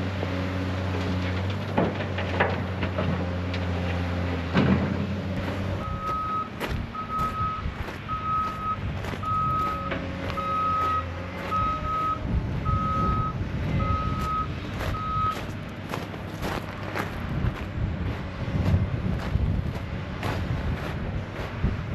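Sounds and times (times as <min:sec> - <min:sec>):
engine running: 0:00.0 - 0:21.9
vehicle backup alarm beeping: 0:05.4 - 0:15.6.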